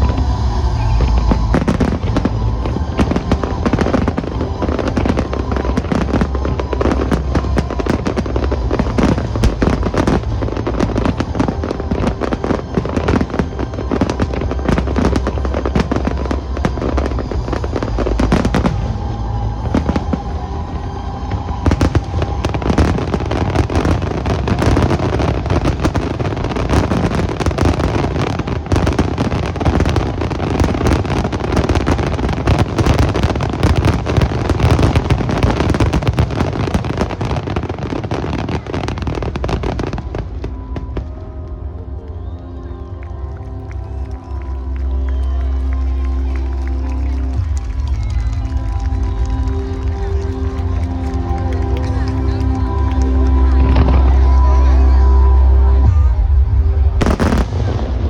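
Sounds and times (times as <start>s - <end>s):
fireworks bangs and crackles: 0.0s - 58.0s
music playing: 0.0s - 58.0s.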